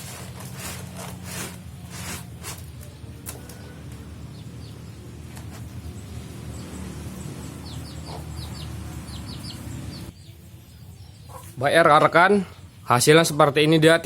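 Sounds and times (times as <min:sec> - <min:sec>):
chickens clucking: 0:07.6 - 0:12.7.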